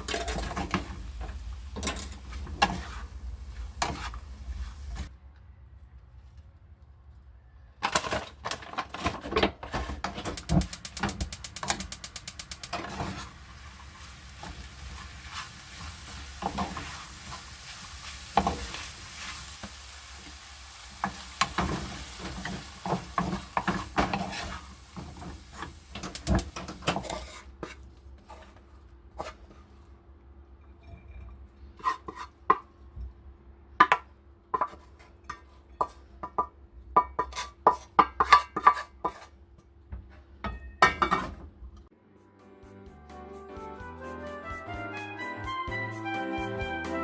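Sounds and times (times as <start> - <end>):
food sizzling in a pan: 0.0 - 5.1, 12.3 - 27.5
spatula scraping a pan: 0.0 - 5.1, 12.8 - 19.8, 21.0 - 29.8, 31.6 - 32.6, 34.6 - 36.2, 37.1 - 39.4.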